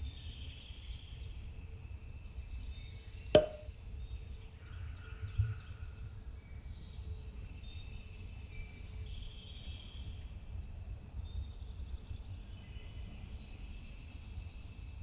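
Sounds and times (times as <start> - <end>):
dull thump: 3.4 - 3.7
sharp knock: 3.4 - 3.7.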